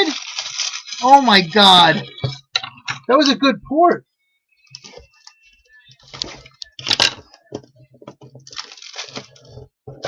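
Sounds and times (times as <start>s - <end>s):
plastic wrap and cardboard rustling: 0.0s - 2.0s, 8.4s - 10.0s.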